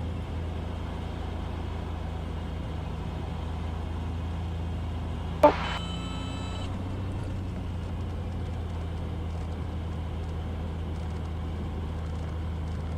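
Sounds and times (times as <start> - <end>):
brief ringing tone: 5.4 - 6.7.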